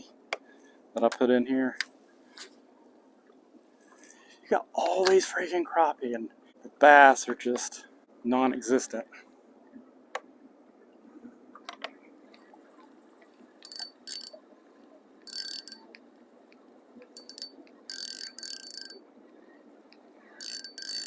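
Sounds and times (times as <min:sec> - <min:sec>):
fishing reel clicking and whirring: 0:13.6 - 0:14.4, 0:15.2 - 0:16.0, 0:17.1 - 0:19.0, 0:20.4 - 0:21.0.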